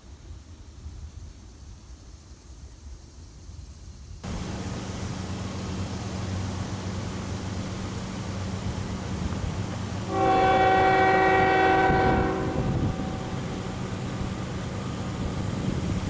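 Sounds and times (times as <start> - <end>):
low wind rumble: 0.3 - 16.0
diesel locomotive humming: 4.2 - 16.0.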